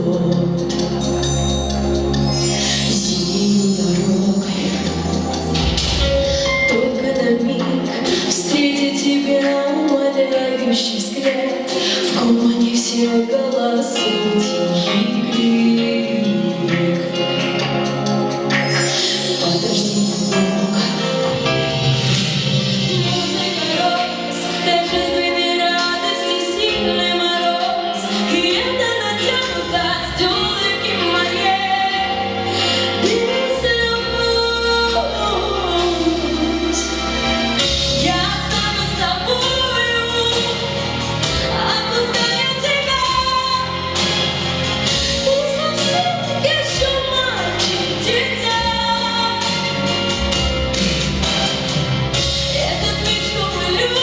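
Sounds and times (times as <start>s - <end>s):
young female voice singing: 22.8s - 37.0s.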